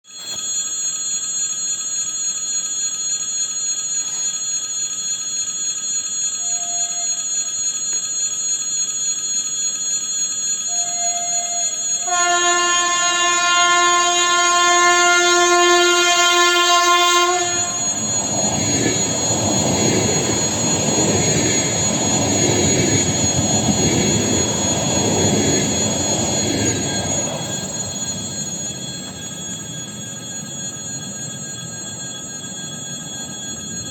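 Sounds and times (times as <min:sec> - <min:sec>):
faint train horn toots: 0:10.7 - 0:29.2
train horn blast: 0:11.0 - 0:28.5
train wheels rumbling on rails: 0:12.1 - 0:31.0.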